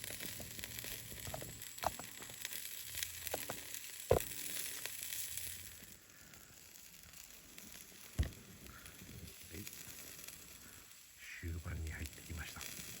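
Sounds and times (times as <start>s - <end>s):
meat sizzling over a fire: 0.0s - 13.0s
sharp fire pop: 3.3s - 4.5s, 8.1s - 8.8s.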